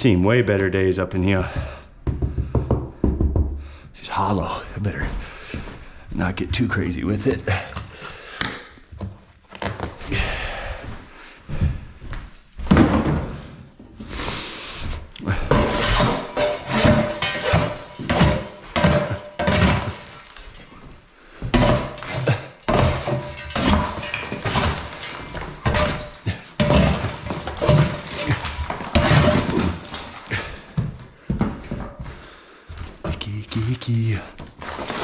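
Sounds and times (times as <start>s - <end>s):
debris crashing and clanking: 15.3s - 31.0s, 34.5s - 35.0s.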